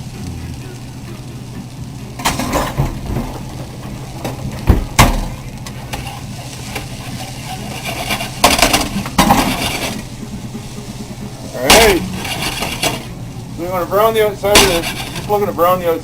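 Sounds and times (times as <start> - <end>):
low hum: 0.0 - 4.6
potatoes frying in a pan: 0.0 - 16.0
scraping in a pan: 5.9 - 10.1, 11.7 - 13.1, 14.5 - 15.5.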